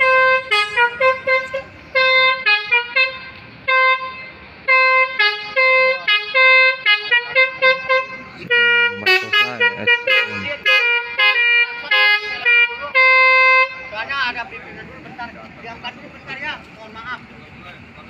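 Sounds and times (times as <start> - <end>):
musical bus air horn tune: 0.0 - 14.0.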